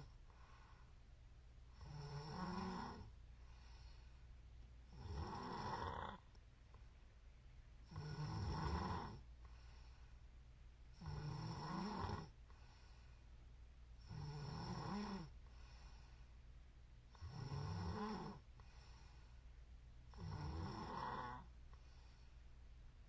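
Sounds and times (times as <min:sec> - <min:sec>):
faint low hum: 0:00.0 - 0:23.0
woman snoring: 0:01.8 - 0:03.1, 0:04.9 - 0:06.2, 0:07.9 - 0:09.2, 0:11.0 - 0:12.4, 0:14.0 - 0:15.4, 0:17.1 - 0:18.4, 0:20.1 - 0:21.5.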